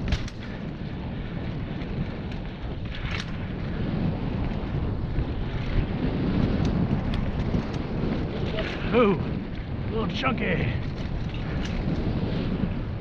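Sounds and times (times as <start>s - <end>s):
bike rolling over dirt: 0.0s - 13.0s
wind buffeting microphone: 0.0s - 13.0s
faint clicks and rattles: 10.4s - 12.3s.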